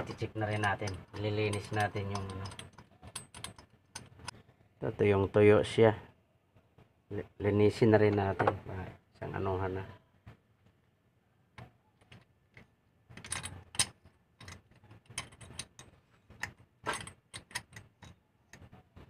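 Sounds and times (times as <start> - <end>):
metal tools clinking: 0.0 - 4.3, 13.2 - 18.2.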